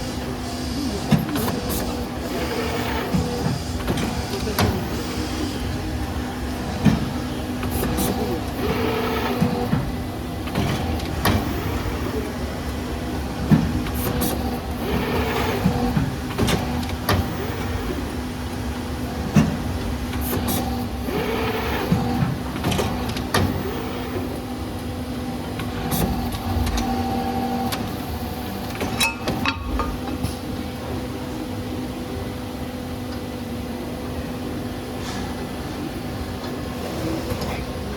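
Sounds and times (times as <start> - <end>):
machine motor hum: 0.0 - 37.9
sharp clicks and clunks: 21.8 - 23.8.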